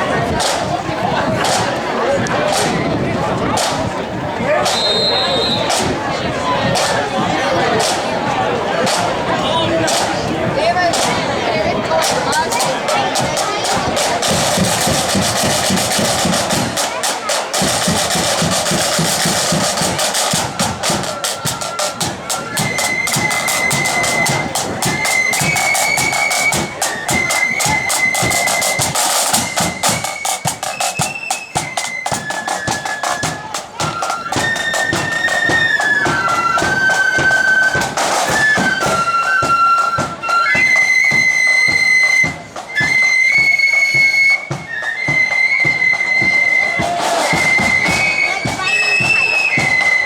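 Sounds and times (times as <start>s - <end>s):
snare and bass drum beats: 0.0s - 50.0s
flutes playing shrill melody: 4.5s - 5.9s, 12.8s - 50.0s.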